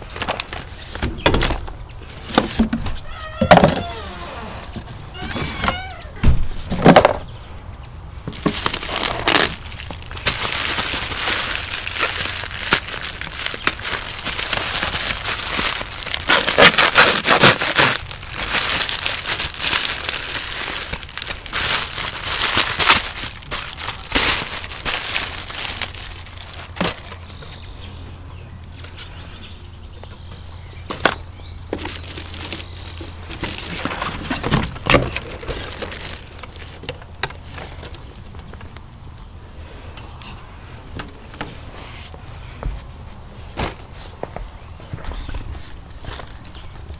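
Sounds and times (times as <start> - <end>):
plastic and cardboard crinkling: 8.3 - 27.7, 30.8 - 38.8, 44.9 - 46.9.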